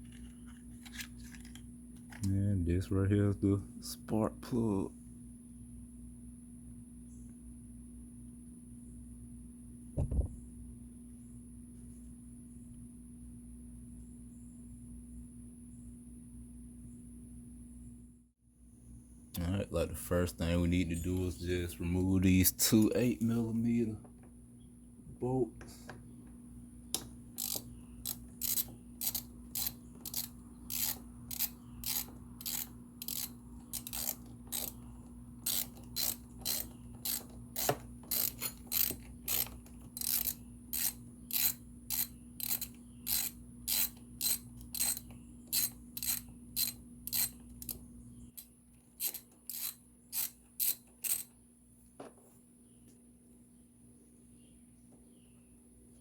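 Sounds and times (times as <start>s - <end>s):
hand ratchet clicking: 27.0s - 34.8s, 35.4s - 47.8s, 48.4s - 51.3s.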